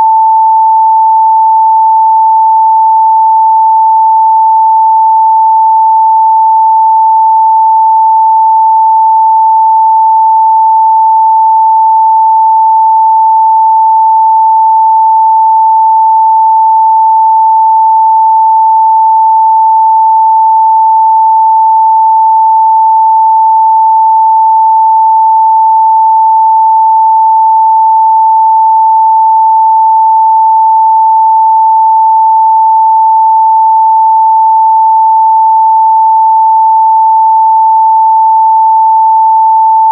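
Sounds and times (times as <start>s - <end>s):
sine-wave test tone: 0.0s - 39.9s.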